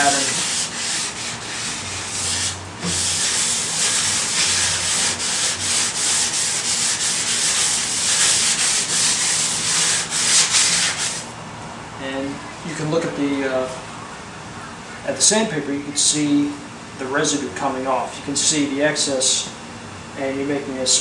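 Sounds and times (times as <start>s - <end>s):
wet sandpaper rubbing: 0.0s - 11.3s.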